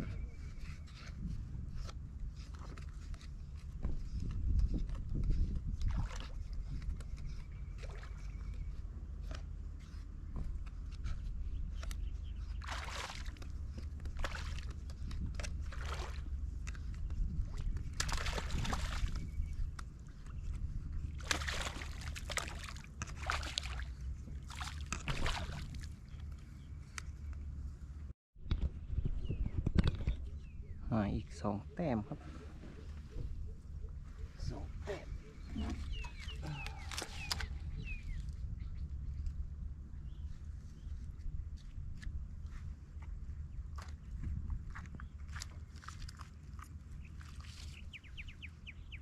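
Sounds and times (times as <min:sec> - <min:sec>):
steady low rumble: 0:00.0 - 0:48.9
water sloshing and splashing: 0:01.7 - 0:27.1, 0:34.4 - 0:38.3, 0:43.0 - 0:48.6
bird chirping: 0:28.8 - 0:39.2, 0:47.0 - 0:49.0.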